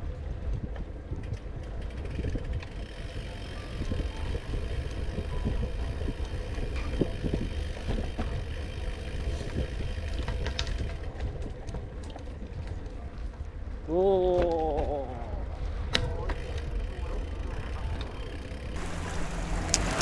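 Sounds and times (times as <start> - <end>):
light clicks and ticks: 18.8 - 20.0
wind rumbling on microphone: 18.8 - 20.0.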